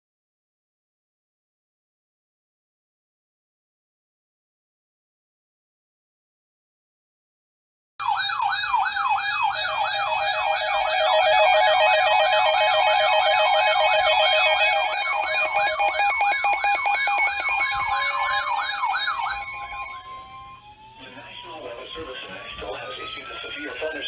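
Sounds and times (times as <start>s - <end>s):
electronic siren sweeping: 8.0s - 24.0s
steady high tones: 8.1s - 24.0s.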